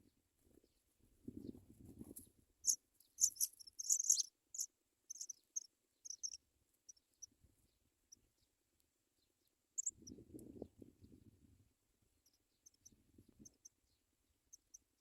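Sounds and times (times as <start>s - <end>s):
nestlings cheeping: 2.6s - 7.0s, 9.8s - 10.0s.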